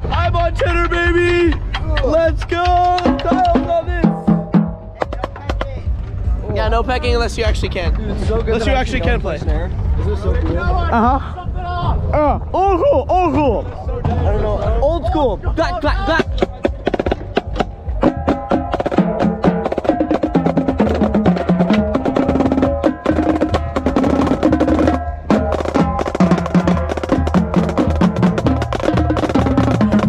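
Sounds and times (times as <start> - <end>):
tenor drums: 0.0 - 11.2, 14.0 - 30.0
snare drums with rim clicks: 0.8 - 4.4, 20.8 - 21.9.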